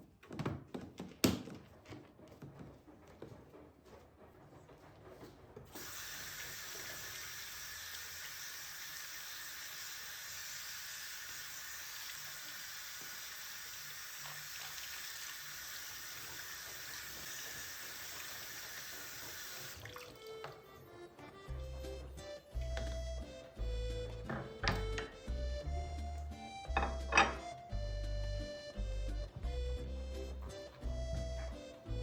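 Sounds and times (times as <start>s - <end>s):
tap running into a sink: 5.7s - 20.6s, 24.2s - 25.2s, 26.7s - 27.4s.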